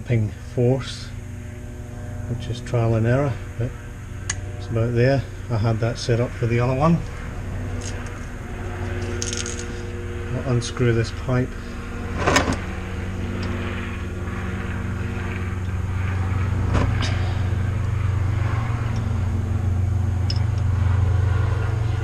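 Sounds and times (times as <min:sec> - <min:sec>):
low mechanical hum: 0:00.0 - 0:22.0
spanner metallic clicks: 0:20.2 - 0:20.7.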